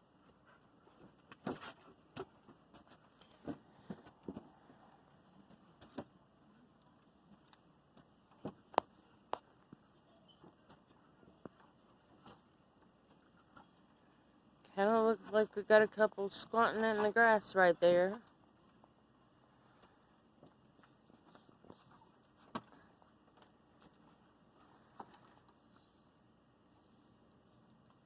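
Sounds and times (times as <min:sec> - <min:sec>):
light jingling taps: 0:00.0 - 0:06.2, 0:06.8 - 0:14.0, 0:19.7 - 0:24.2.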